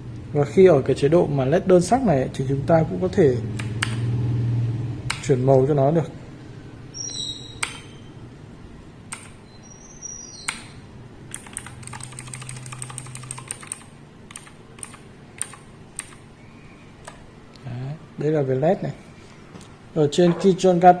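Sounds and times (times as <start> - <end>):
mechanical keyboard key clicks: 11.3 - 16.2.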